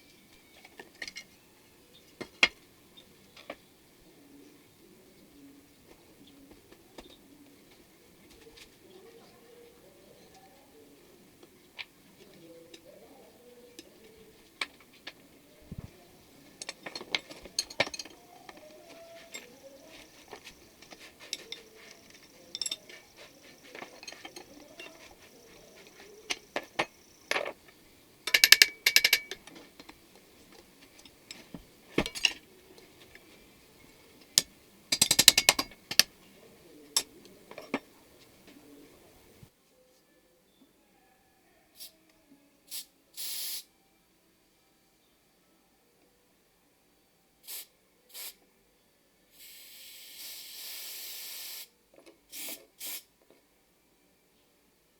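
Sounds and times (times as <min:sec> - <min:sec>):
metal parts clicking and knocking: 0:16.6 - 0:19.5, 0:20.1 - 0:25.2, 0:28.2 - 0:30.0, 0:32.0 - 0:32.5, 0:34.4 - 0:36.1.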